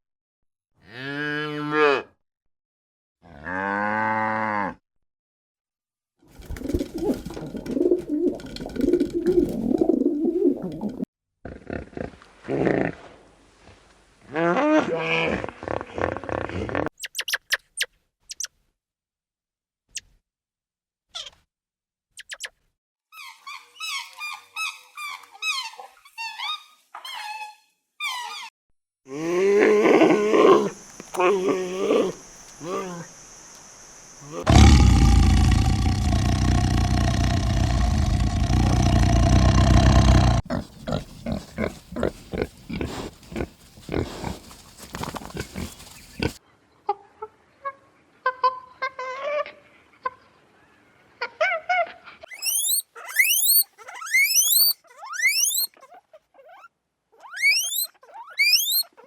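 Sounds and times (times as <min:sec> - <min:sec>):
high squeaky animal cries: 0:23.2 - 0:28.5, 0:52.3 - 0:59.0
low drawn-out animal call: 0:34.2 - 0:40.6, 0:56.4 - 0:59.0
rough fluttering animal calls: 0:57.4 - 0:59.0.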